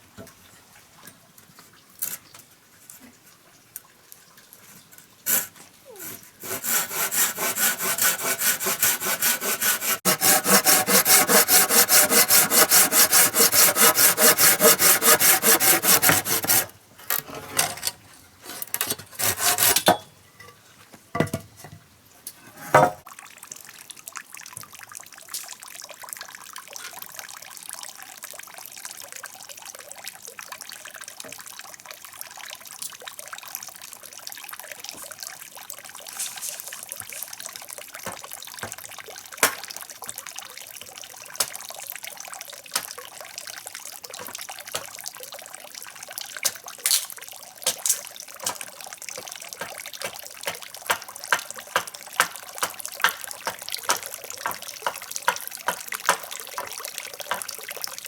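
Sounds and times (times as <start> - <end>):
water trickling: 23.0 - 58.0.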